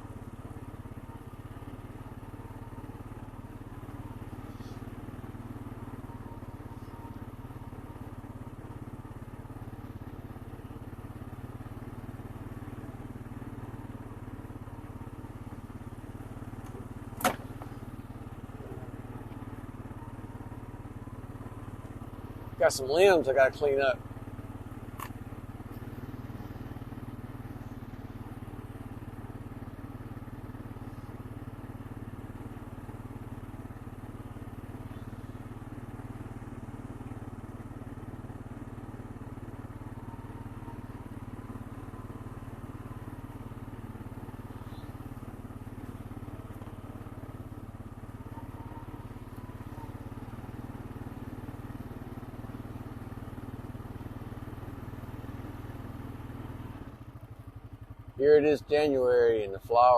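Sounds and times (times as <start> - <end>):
atv engine running: 0.0 - 59.9.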